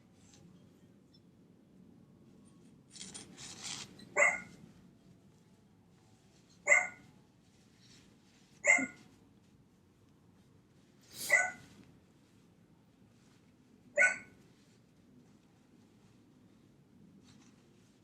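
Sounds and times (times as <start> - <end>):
brief rustle: 2.5 - 4.3, 17.2 - 18.0
dog barking: 4.2 - 4.6, 6.7 - 7.1, 8.6 - 9.0, 11.2 - 11.7, 14.0 - 14.4.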